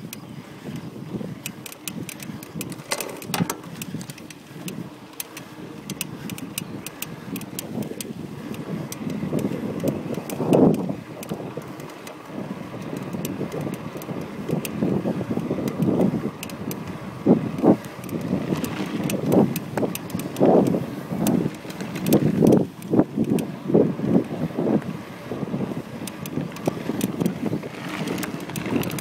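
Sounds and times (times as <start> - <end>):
wind on microphone: 0.0 - 5.0, 5.6 - 29.0
bicycle creaking: 0.0 - 29.0.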